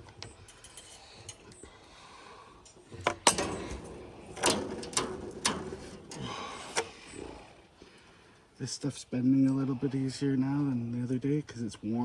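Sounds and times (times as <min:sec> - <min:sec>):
metal wire clicking and rattling: 0:00.0 - 0:01.8, 0:02.6 - 0:07.8.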